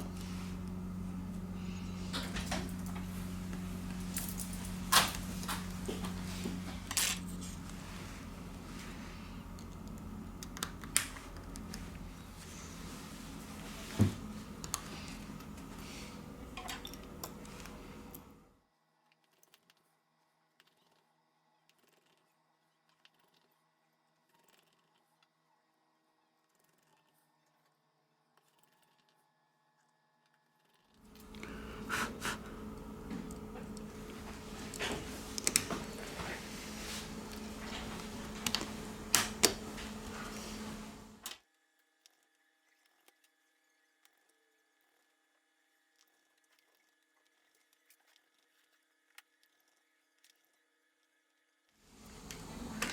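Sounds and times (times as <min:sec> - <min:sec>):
steady background hum: 0:00.0 - 0:18.6, 0:30.6 - 0:41.3, 0:51.9 - 0:52.9
tools clicking and tapping: 0:16.6 - 0:18.3.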